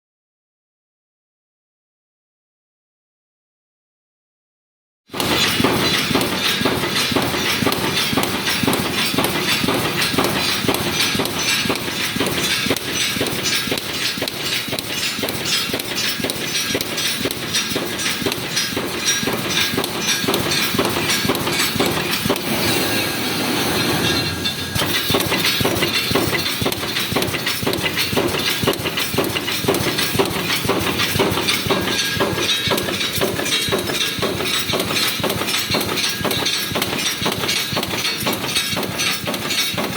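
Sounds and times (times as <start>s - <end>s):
welding machine clattering: 5.1s - 39.9s.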